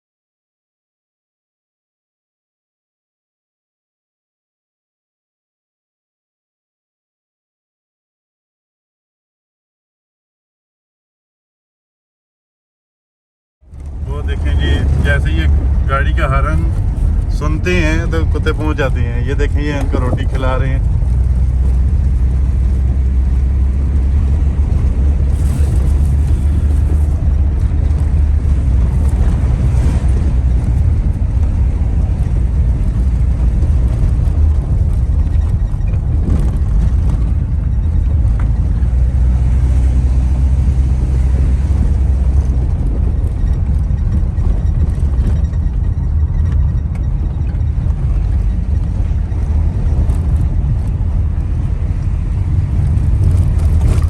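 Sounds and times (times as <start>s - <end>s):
car engine rumble: 13.6s - 54.0s
road noise: 13.6s - 54.0s.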